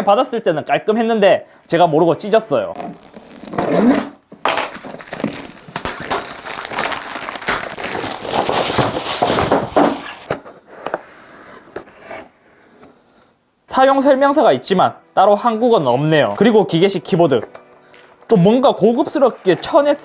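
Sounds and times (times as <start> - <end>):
shrink-wrap crinkling: 2.8 - 10.4.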